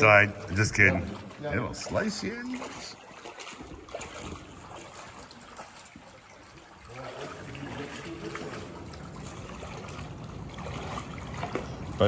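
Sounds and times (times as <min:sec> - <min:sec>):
river water trickling and lapping: 0:00.0 - 0:12.0.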